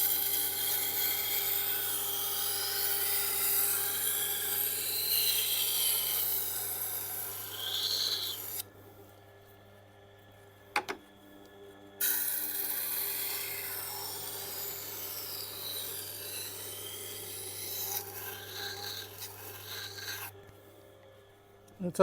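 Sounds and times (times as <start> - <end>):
knife grinding on grindstone: 2.6 - 8.6, 12.0 - 20.3.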